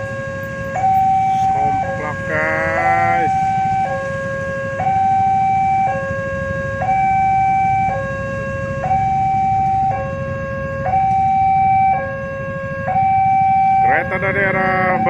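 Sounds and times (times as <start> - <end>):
low traffic rumble: 0.0 - 15.0
two-tone crossing alarm: 0.0 - 15.0.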